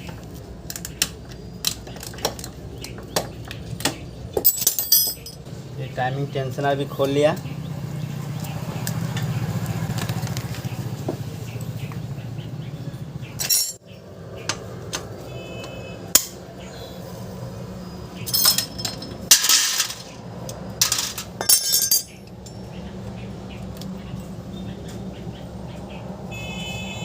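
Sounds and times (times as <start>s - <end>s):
metal tools clinking and rattling: 4.4s - 5.5s, 13.4s - 13.8s, 18.2s - 22.7s.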